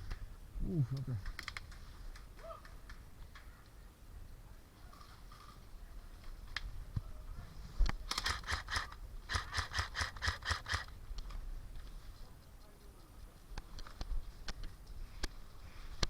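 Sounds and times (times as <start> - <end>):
airsoft gun firing: 8.1 - 10.9.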